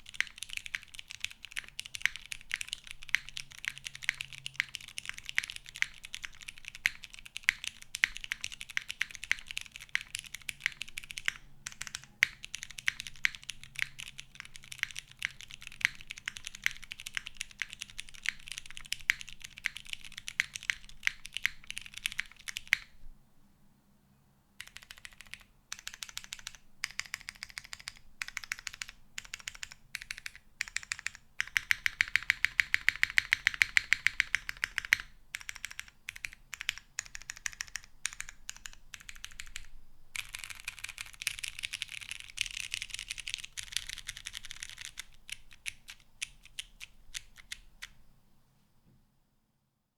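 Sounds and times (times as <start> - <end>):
mechanical keyboard typing: 0.0 - 22.9, 24.6 - 48.0.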